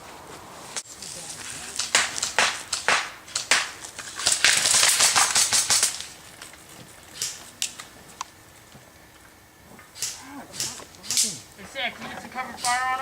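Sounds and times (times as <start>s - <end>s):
airsoft rifle shots: 1.6s - 6.3s, 7.1s - 8.0s, 9.8s - 13.0s.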